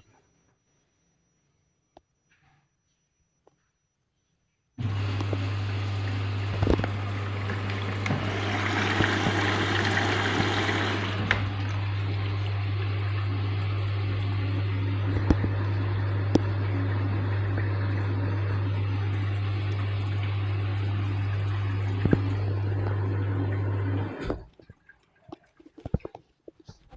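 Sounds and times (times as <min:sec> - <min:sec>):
washing machine hum: 0:04.8 - 0:25.6
water rushing and trickling: 0:04.9 - 0:13.1.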